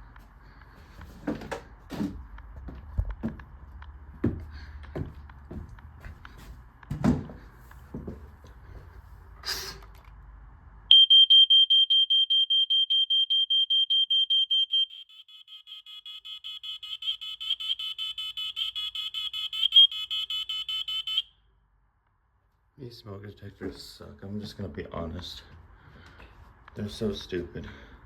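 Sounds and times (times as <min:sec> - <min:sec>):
knocks and handling noises: 0:00.8 - 0:08.6
quieter multi-tone beeping: 0:10.9 - 0:21.3
smoke alarm rapid beeping: 0:10.9 - 0:21.3.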